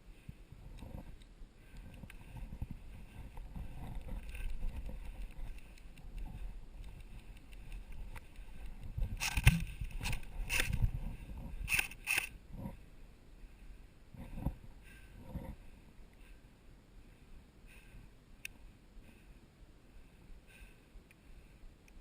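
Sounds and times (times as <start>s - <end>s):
sharp clicks: 4.2s - 10.8s, 11.7s - 12.3s.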